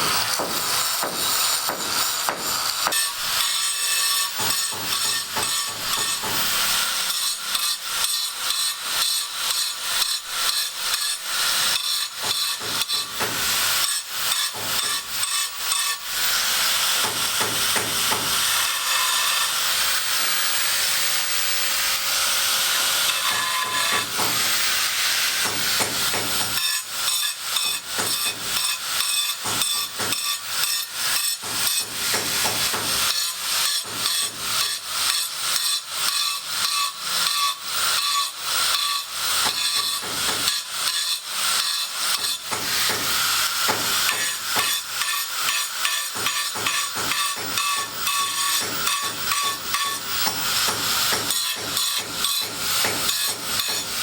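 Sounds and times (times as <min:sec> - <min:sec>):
hammering and knocking: 0:00.0 - 0:03.0, 0:25.4 - 0:26.5.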